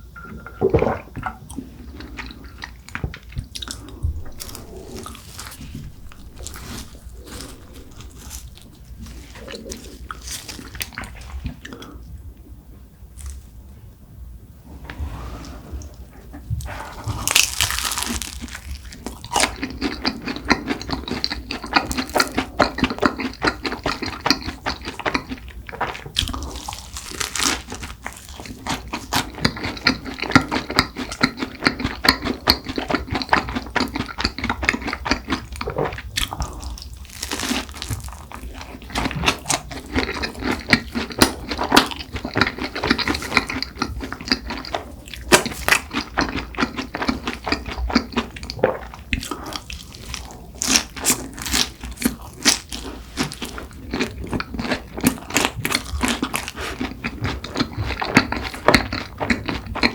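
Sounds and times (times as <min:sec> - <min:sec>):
wet sticky chewing: 0:01.2 - 0:12.0, 0:16.6 - 0:59.9
crunchy bites: 0:17.1 - 0:32.2, 0:34.7 - 0:59.9.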